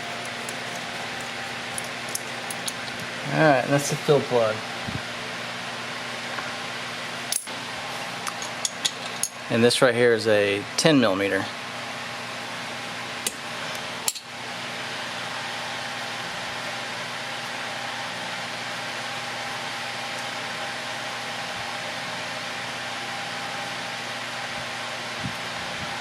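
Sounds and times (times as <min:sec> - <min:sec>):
fan whirring: 0:00.0 - 0:26.0.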